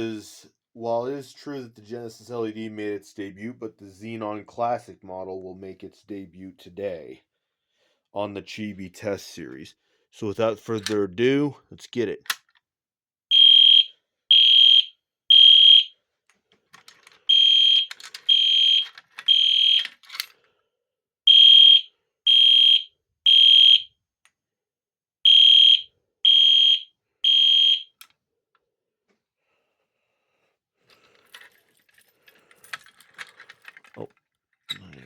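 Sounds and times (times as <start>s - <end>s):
fire alarm horn beeping: 13.3s - 15.9s, 17.3s - 19.9s, 21.3s - 23.9s, 25.2s - 28.0s.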